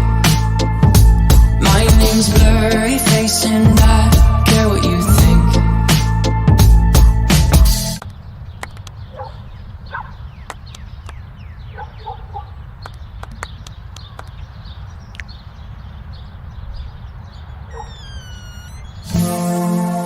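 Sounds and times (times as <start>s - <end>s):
sharp clicks: 8.0s - 9.0s
faint bird calls: 17.4s - 19.1s.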